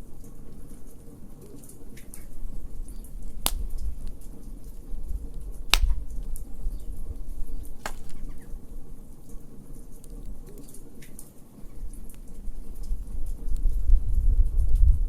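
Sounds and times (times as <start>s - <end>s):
fire crackling: 0.0s - 14.5s
loud fire pops: 2.9s - 4.4s, 5.3s - 8.6s.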